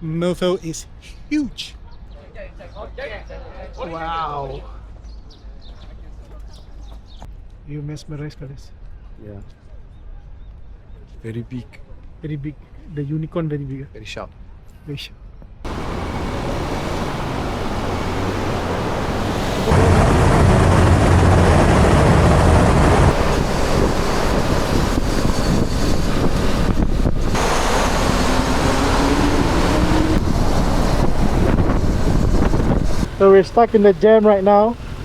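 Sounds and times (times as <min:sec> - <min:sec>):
wind rushing over microphone: 0:15.7 - 0:33.8.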